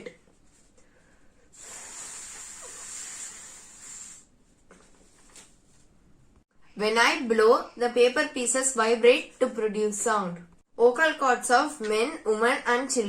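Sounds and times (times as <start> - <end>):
breathy hiss through paper: 0.6 - 4.3.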